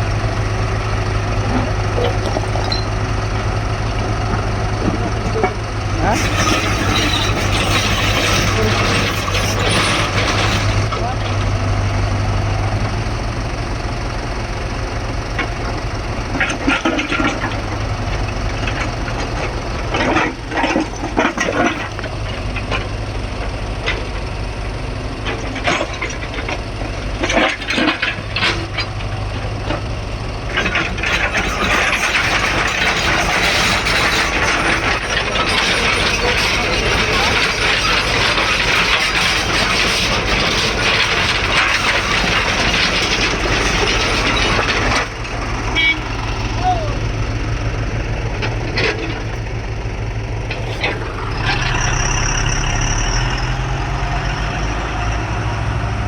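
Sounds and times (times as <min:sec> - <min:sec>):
continuous rattling: 0:00.0 - 0:11.6, 0:12.6 - 0:55.6
diesel engine humming: 0:00.0 - 0:56.0
metal clanks and rattles: 0:00.2 - 0:11.6, 0:15.3 - 0:46.3, 0:48.0 - 0:54.2.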